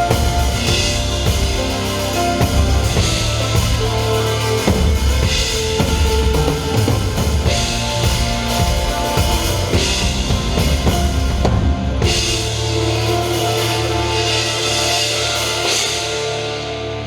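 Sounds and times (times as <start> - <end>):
cymbal crashes: 0.0 - 17.0
live rock band playing: 0.0 - 17.0.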